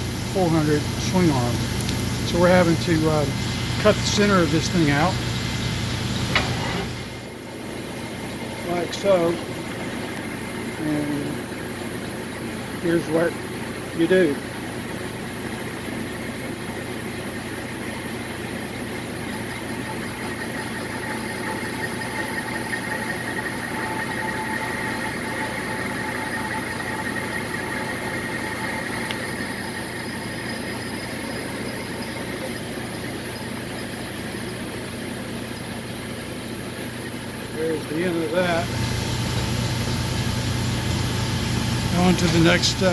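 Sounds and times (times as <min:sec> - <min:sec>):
power tool cutting metal: 0:38.6 - 0:42.9.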